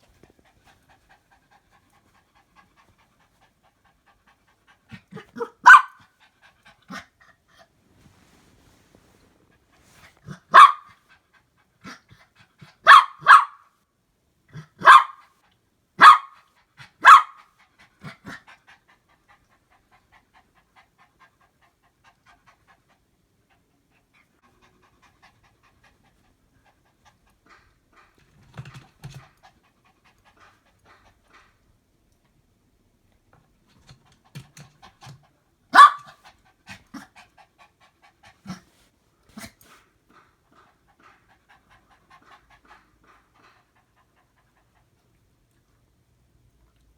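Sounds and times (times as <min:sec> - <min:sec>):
dog barking: 0:05.4 - 0:06.0, 0:10.4 - 0:10.9, 0:12.8 - 0:13.7, 0:14.8 - 0:15.2, 0:16.0 - 0:16.4, 0:17.0 - 0:17.4, 0:35.7 - 0:36.2.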